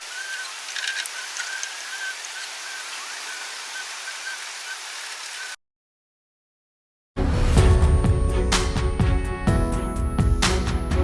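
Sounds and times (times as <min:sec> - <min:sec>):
outdoor hiss: 0:00.0 - 0:05.6.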